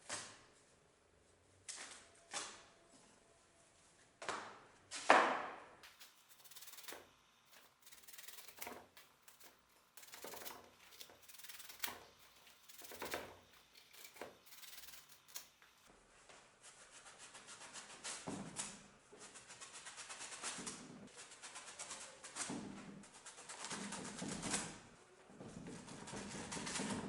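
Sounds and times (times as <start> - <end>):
hand rubbing and scraping strokes: 5.8 - 15.9.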